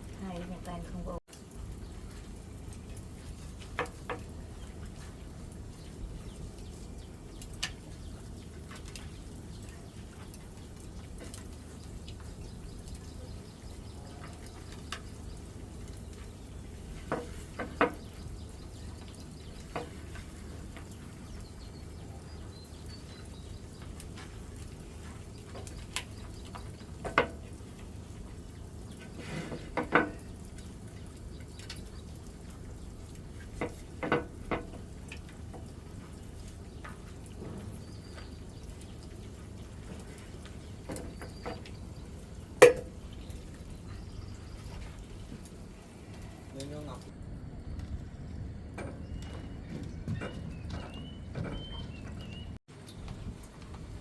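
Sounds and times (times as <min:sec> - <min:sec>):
steady low hum: 0:42.1 - 0:50.2
objects clicking and knocking: 0:42.6 - 0:43.0.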